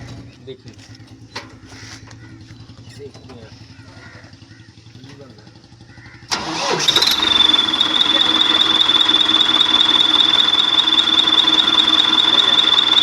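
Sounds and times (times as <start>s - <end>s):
engine running: 0.0s - 13.0s
high-pitched turbo whistle: 7.0s - 13.0s.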